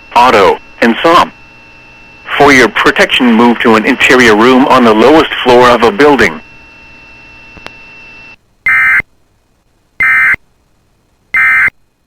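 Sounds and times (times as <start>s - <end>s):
short digital data bursts: 8.7s - 9.0s, 10.0s - 10.4s, 11.3s - 11.7s.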